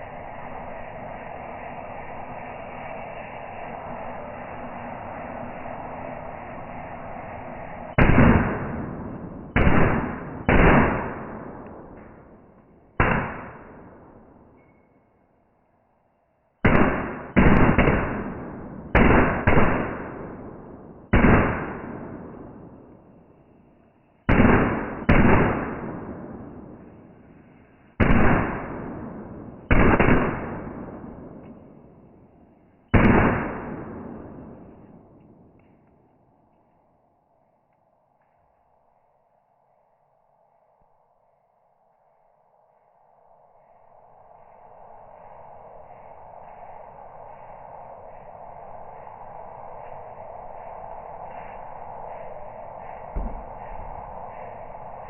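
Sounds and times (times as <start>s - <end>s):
firecrackers banging: 8.0s - 12.3s, 13.0s - 14.7s, 16.6s - 22.7s, 24.3s - 27.0s, 28.0s - 31.8s, 32.9s - 35.9s.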